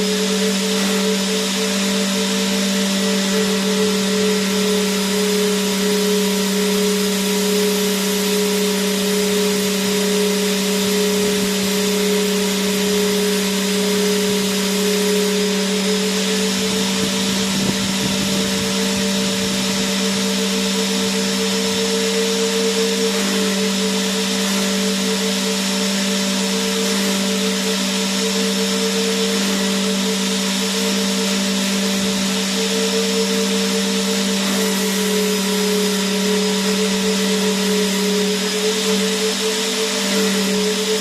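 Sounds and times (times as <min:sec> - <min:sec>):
vacuum cleaner running: 0:00.0 - 0:41.0.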